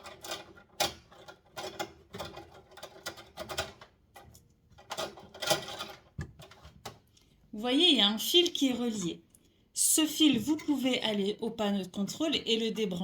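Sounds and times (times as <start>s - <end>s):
plastic parts clicking and rattling: 0.0s - 7.2s.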